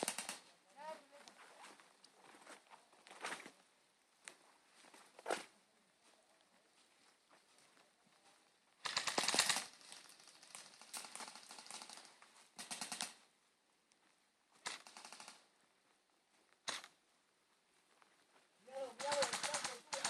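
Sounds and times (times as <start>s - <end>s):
airsoft rifles firing bursts: 0.0s - 0.4s, 8.8s - 13.2s, 14.6s - 15.4s, 19.0s - 20.0s.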